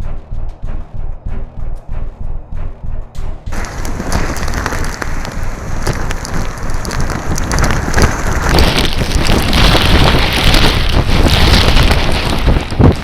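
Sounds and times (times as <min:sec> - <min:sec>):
heavy rain: 0:03.5 - 0:13.0
strong wind: 0:03.5 - 0:13.0
wind buffeting microphone: 0:03.5 - 0:13.0.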